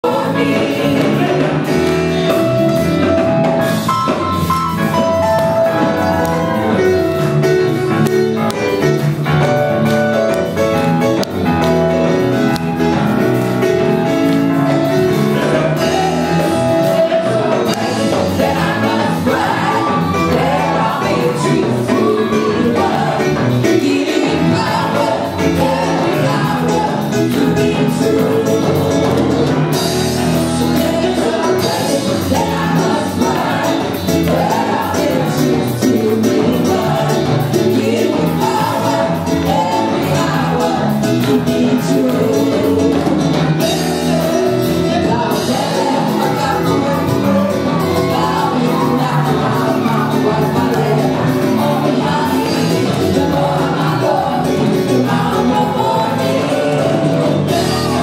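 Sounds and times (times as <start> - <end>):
gospel band playing: 0.0 - 58.0
person singing: 15.0 - 58.0.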